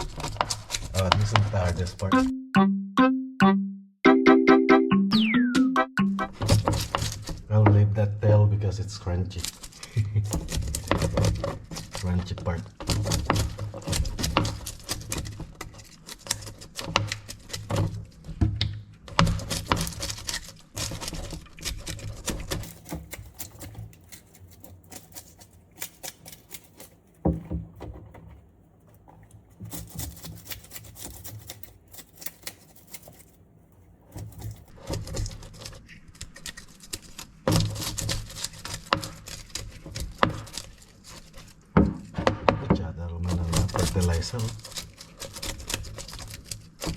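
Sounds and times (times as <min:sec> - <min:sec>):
knife scraping fish: 0:00.0 - 0:01.8, 0:12.7 - 0:18.3, 0:19.2 - 0:27.2, 0:28.9 - 0:42.1, 0:43.3 - 0:46.9.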